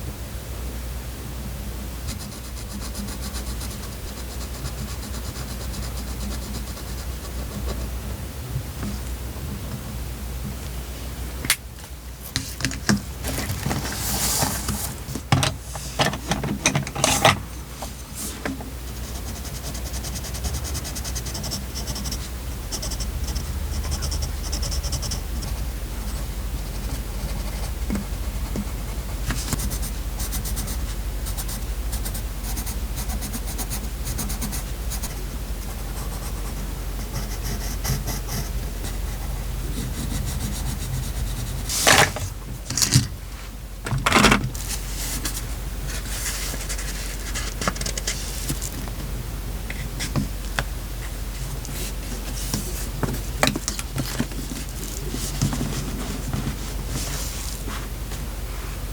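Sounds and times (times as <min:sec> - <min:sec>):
paper rustling and scraping: 0:12.2 - 0:18.6, 0:26.8 - 0:29.9, 0:41.2 - 0:49.0, 0:51.3 - 0:57.9
loud paper rustles: 0:12.3 - 0:16.0, 0:41.6 - 0:43.1, 0:44.1 - 0:49.0.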